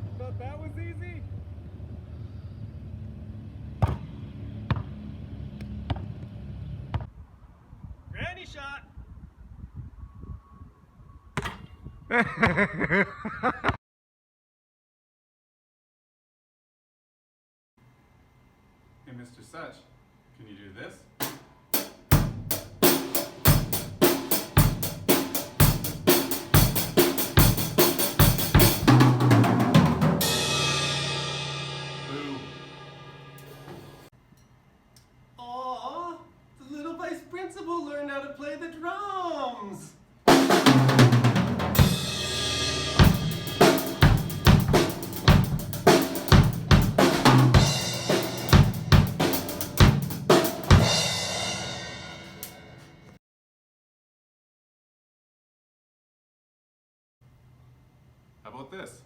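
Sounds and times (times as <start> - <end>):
drum kit playing a steady beat: 21.2 - 34.1, 40.3 - 52.9
ringing cymbals: 30.2 - 34.5, 41.8 - 46.7, 47.5 - 52.8.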